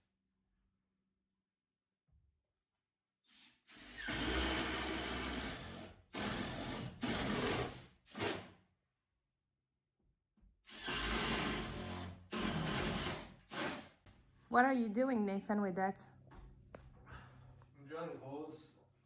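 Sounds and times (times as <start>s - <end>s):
power drill boring into wood: 3.7s - 8.5s, 10.7s - 14.0s.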